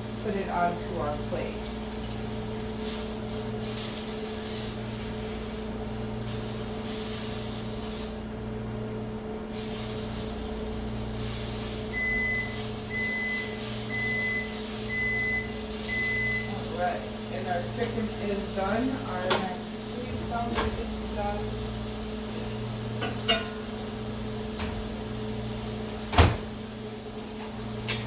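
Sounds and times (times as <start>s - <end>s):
microwave oven humming: 0.0s - 28.0s
microwave beeping: 11.8s - 16.9s.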